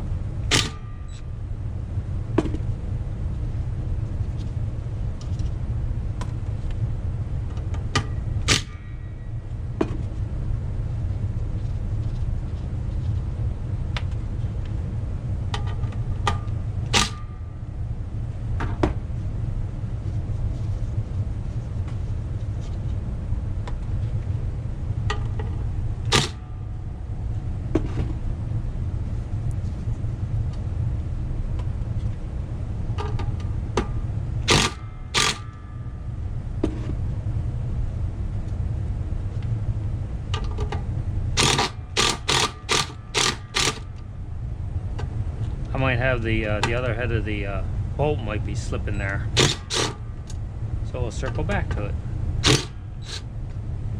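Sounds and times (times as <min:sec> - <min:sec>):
steady low hum: 0:00.0 - 0:53.9
metallic clicks of hand tools: 0:34.5 - 0:35.5, 0:41.4 - 0:43.8, 0:52.4 - 0:53.2.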